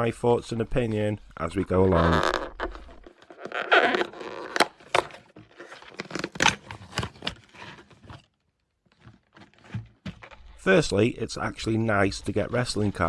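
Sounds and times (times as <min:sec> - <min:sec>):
packaging ripping and crinkling: 0:02.0 - 0:09.8.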